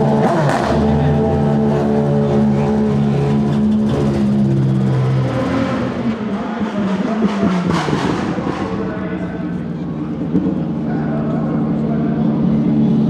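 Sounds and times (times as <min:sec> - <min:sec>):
race car engine running with pops: 0:10.0 - 0:10.9.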